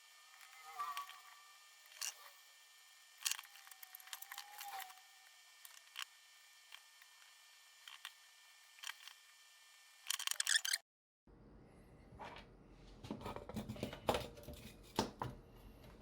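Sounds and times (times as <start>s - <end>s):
small tools clicking and tapping: 3.2s - 5.0s.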